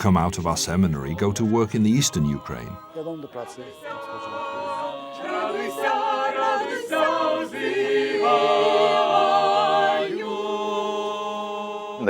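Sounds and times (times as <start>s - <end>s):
choir singing a cappella: 0.0s - 12.0s.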